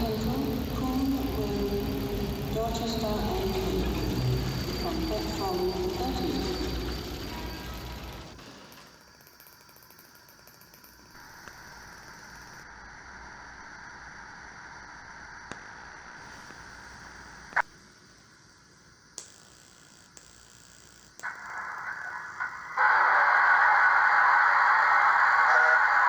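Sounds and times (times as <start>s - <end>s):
steam hiss: 15.6s - 17.5s.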